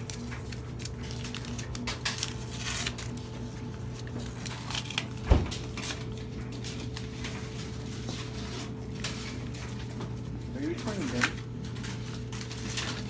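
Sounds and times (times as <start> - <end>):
low electrical hum: 0.0 - 13.0
heavy low thud: 5.3 - 5.7.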